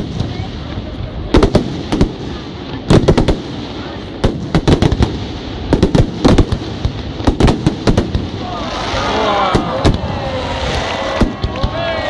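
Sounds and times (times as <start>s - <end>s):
fireworks bursting: 0.0s - 12.0s.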